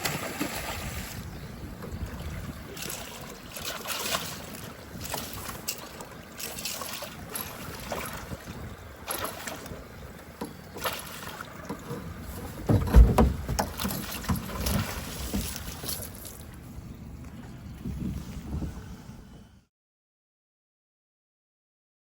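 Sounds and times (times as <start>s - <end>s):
water sloshing and splashing: 0.0s - 18.6s
wind on microphone: 0.1s - 5.6s, 7.2s - 10.0s, 17.4s - 19.7s
heavy low thump: 12.6s - 13.9s
knocks: 12.6s - 14.4s.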